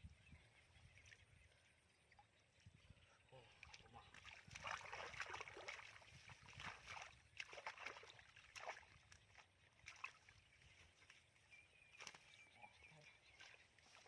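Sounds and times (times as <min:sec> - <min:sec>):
hands splashing in muddy water: 0:03.6 - 0:11.2.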